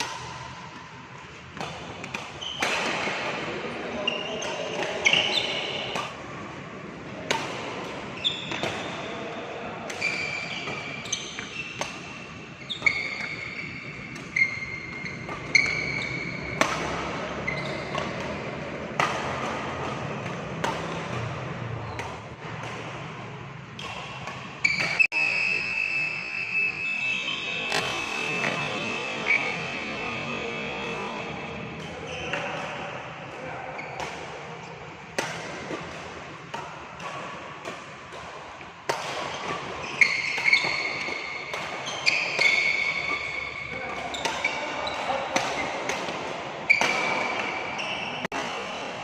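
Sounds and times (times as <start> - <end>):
racket hitting shuttlecock: 0.0 - 25.4, 27.6 - 29.3, 30.8 - 49.0
shoes squeaking on court: 1.5 - 6.1, 7.8 - 9.0, 10.0 - 29.8, 30.5 - 32.8, 39.2 - 45.9, 46.7 - 48.4.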